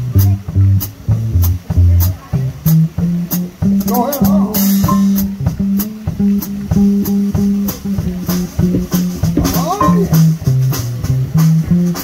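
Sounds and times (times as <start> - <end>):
bass line: 0.0 - 12.0
guitar bent notes: 2.8 - 11.4
drum hits: 3.8 - 11.4.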